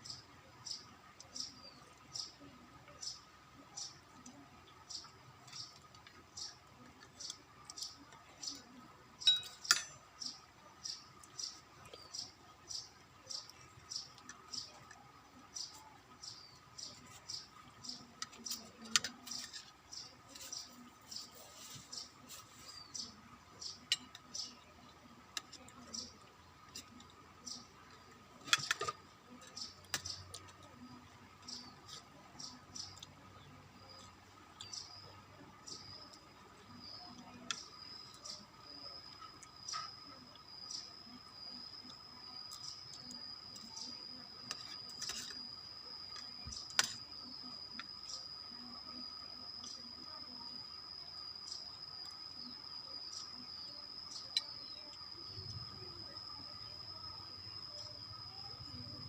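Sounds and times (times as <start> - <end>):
spoon clinking on plate: 9.3 - 10.0.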